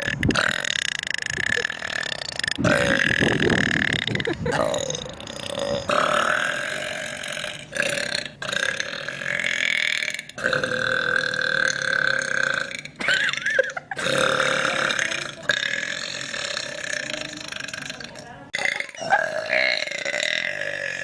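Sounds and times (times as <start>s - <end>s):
woman burping loudly: 0.0s - 21.0s.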